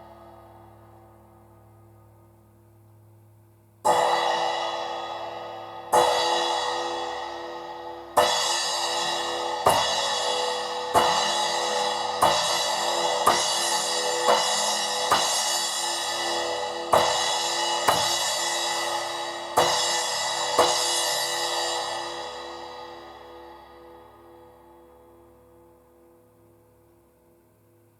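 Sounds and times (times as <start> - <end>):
splash cymbal struck: 3.9 - 25.1.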